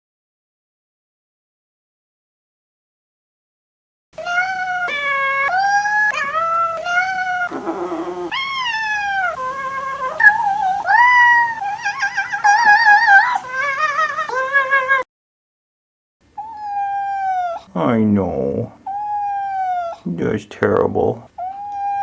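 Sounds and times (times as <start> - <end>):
cat meowing in a tune: 4.2 - 15.0, 16.4 - 17.7, 18.9 - 20.0, 21.4 - 22.0.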